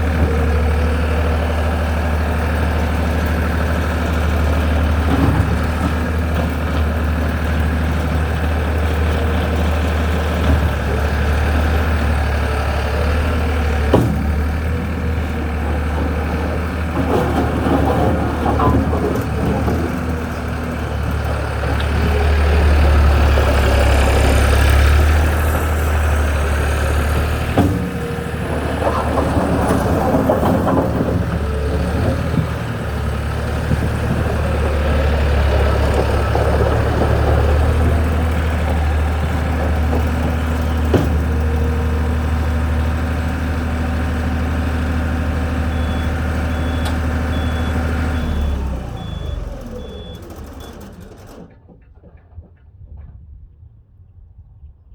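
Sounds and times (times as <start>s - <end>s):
diesel engine running: 0.0s - 51.9s.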